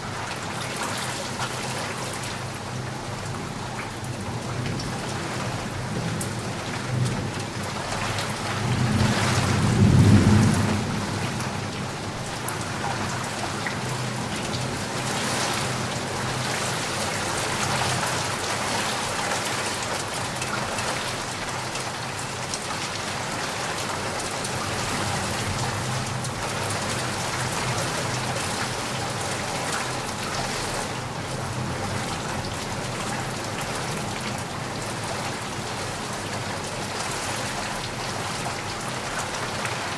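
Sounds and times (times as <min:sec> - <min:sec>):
steady rain falling: 0:00.0 - 0:39.9
low roll of thunder: 0:08.4 - 0:12.4.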